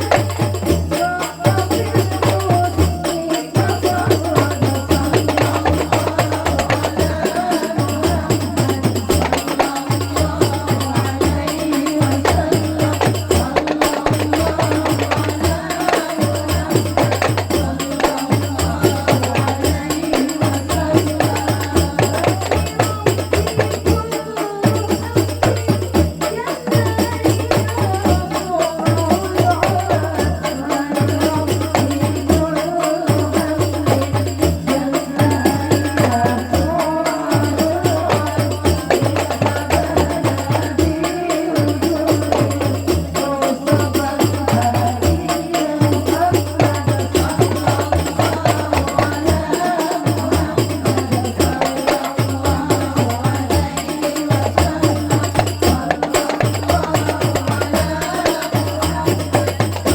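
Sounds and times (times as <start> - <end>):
frame drums beating: 0.0 - 59.9
person singing: 0.0 - 59.9.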